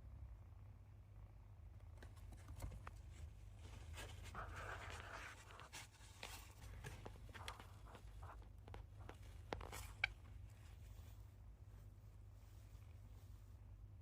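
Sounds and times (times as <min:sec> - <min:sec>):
hamster scratching and clicking: 0:01.9 - 0:10.8
scratchy rustle: 0:02.1 - 0:13.7.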